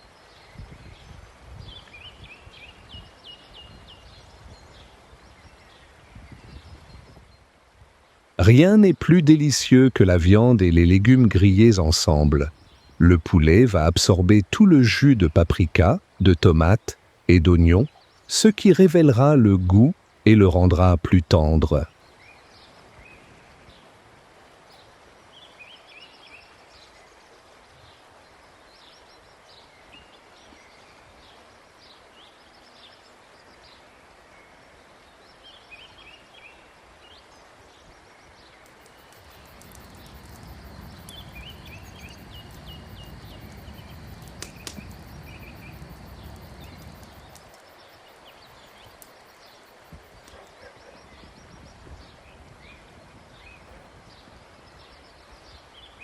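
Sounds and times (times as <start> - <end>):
small birds chirping: 8.6 - 23.9, 37.3 - 56.0.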